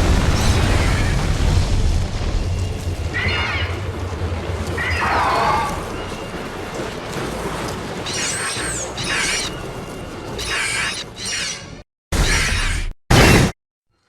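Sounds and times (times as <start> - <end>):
high chirping squeals: 8.0 - 12.8.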